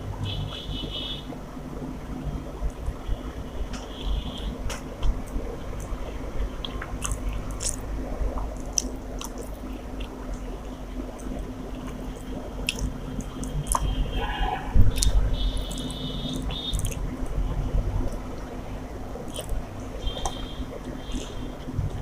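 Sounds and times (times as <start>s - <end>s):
person chewing food: 6.6s - 14.0s, 14.8s - 17.2s, 19.2s - 22.0s.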